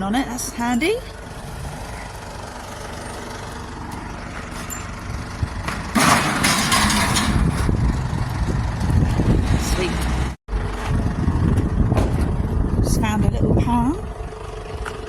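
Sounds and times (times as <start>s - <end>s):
truck engine rumbling: 0.0s - 15.0s.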